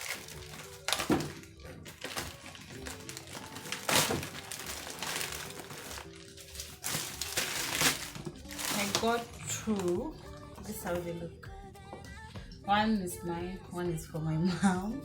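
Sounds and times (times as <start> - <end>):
packaging tearing and crumpling: 0.0 - 10.0
faint background music: 0.0 - 15.0.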